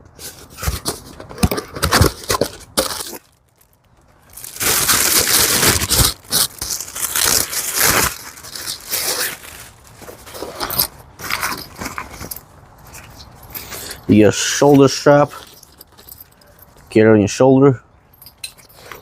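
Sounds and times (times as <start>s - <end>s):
packaging crinkling and tearing: 0.6s - 13.3s.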